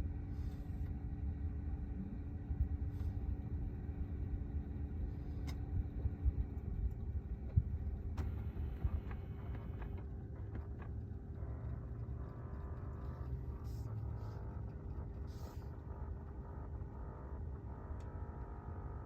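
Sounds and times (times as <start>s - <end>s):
hvac low rumble: 0.0s - 19.0s
steady hum: 0.0s - 19.0s.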